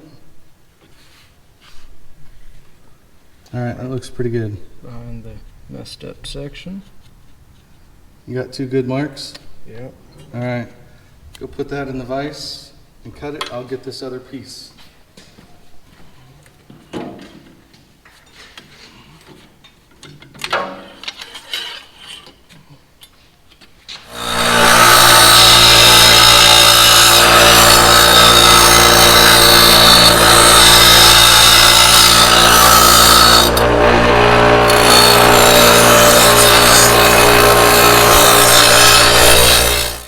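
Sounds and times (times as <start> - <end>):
power tool cutting metal: 24.0 - 40.0.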